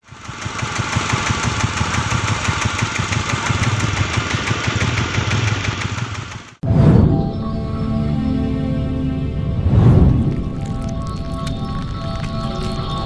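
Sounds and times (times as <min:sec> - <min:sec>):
wood crusher machine droning: 0:00.0 - 0:06.6
music: 0:06.7 - 0:13.0.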